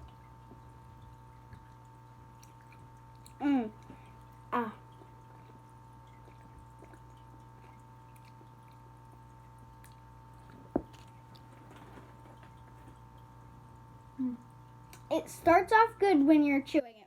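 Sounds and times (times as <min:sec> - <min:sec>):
steady low hum: 0:00.0 - 0:16.8
person chewing candy: 0:02.4 - 0:11.8.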